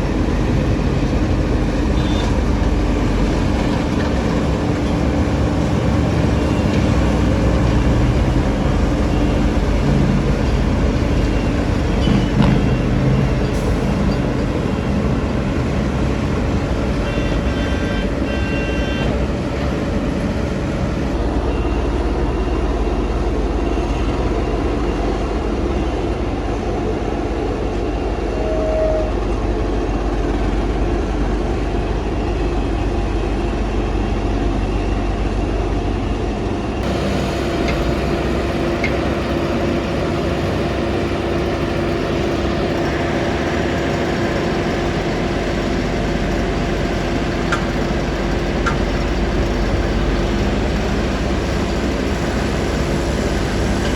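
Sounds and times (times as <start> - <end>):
road traffic engine rumble: 0.0 - 53.9
vehicle horn: 2.0 - 2.3, 17.0 - 19.2, 28.4 - 29.1.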